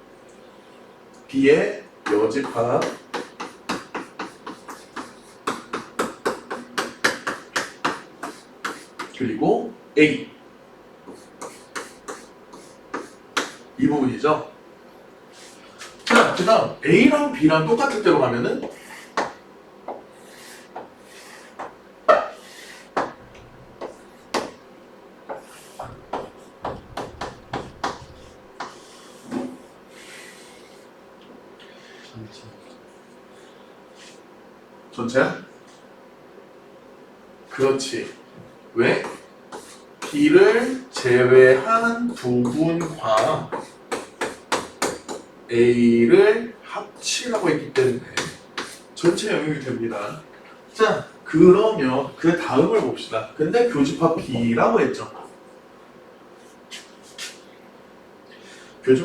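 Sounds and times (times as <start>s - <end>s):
pen scratching strokes: 11.1s - 13.5s, 39.1s - 40.2s.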